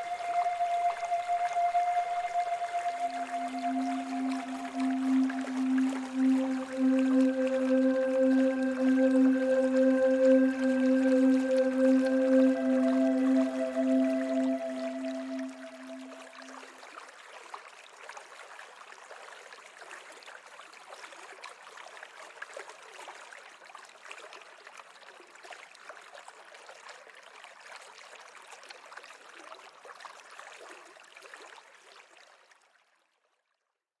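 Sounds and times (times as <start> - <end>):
river water babbling: 0.0 - 16.6.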